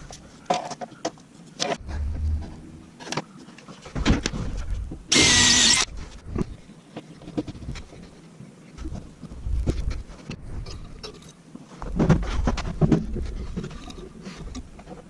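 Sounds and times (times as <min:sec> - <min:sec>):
power tool motor whirr: 0:05.1 - 0:05.9.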